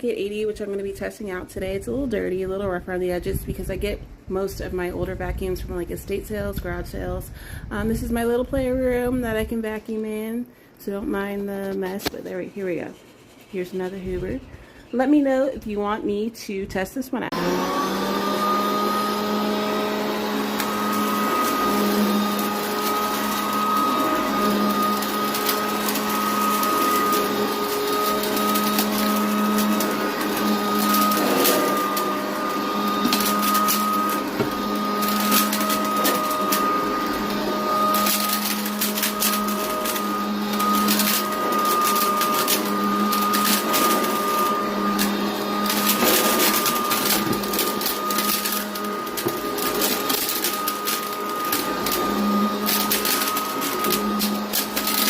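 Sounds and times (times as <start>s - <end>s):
upright vacuum cleaner running: 17.2s - 55.0s.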